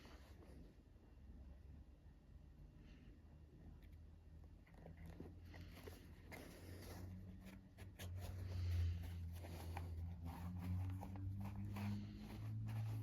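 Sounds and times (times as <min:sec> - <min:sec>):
scraping and clicking handling: 0:04.5 - 0:13.0.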